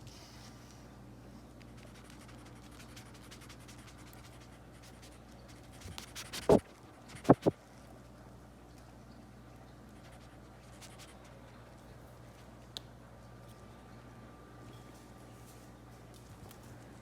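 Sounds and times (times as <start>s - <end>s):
guinea pigs scratching and clicking: 1.6s - 8.1s, 9.8s - 13.6s, 14.7s - 17.0s.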